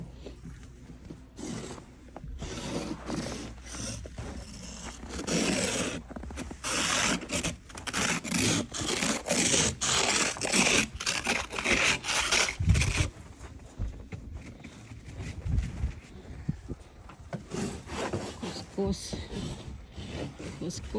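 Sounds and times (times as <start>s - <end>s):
snow scraping and crunching: 1.1s - 7.6s.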